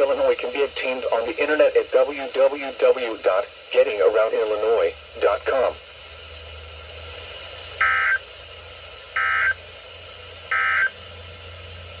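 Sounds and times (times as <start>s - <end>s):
steady low hum: 0.0s - 12.0s
harsh digital data bursts: 7.8s - 8.2s, 9.2s - 9.6s, 10.5s - 10.9s.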